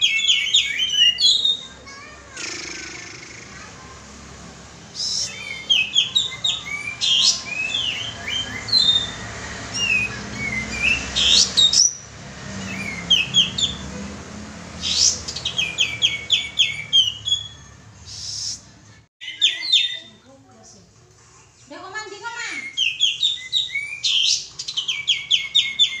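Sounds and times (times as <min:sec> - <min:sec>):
bird singing chirpy whistles: 0:05.0 - 0:12.0, 0:14.9 - 0:18.6, 0:22.6 - 0:26.0.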